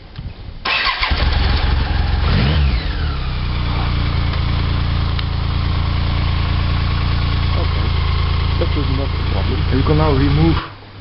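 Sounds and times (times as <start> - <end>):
motorcycle engine starting and idling: 0.6 - 11.0
engine revving: 0.7 - 10.8.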